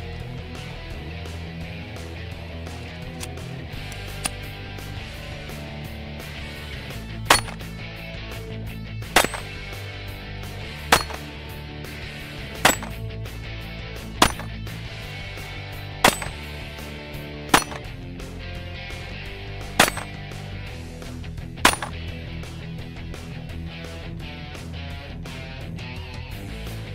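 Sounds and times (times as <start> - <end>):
pistol shots: 7.3 - 7.6, 9.2 - 9.6, 10.9 - 11.3, 14.2 - 14.5, 17.6 - 17.9, 19.8 - 20.2, 21.7 - 22.0.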